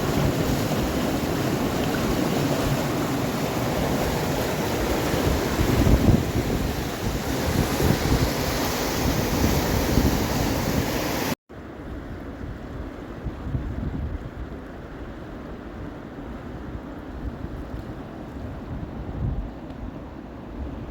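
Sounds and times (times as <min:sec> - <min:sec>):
rushing river rapids: 0:00.0 - 0:11.4
wind buffeting microphone: 0:00.0 - 0:11.4, 0:12.0 - 0:14.6, 0:17.1 - 0:19.6.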